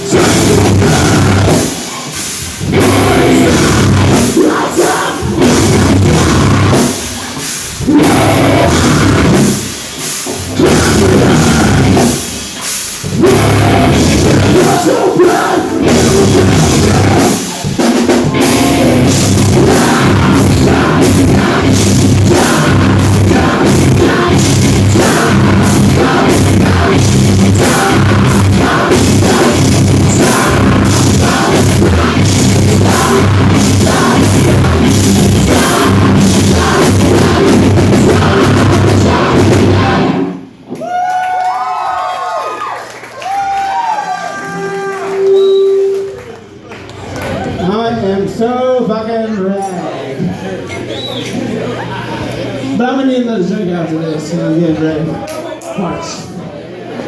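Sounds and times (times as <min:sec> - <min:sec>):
bass guitar: 0:00.0 - 0:40.8
distorted guitars: 0:00.0 - 0:40.8
drum kit: 0:00.0 - 0:41.0.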